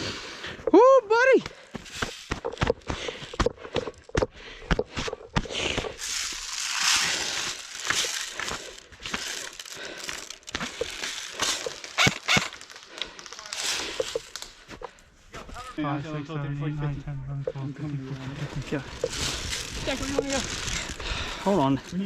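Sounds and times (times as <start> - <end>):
twigs snapping and clicking: 2.3 - 14.8
crunching through snow and brush: 5.5 - 16.0, 18.0 - 22.0.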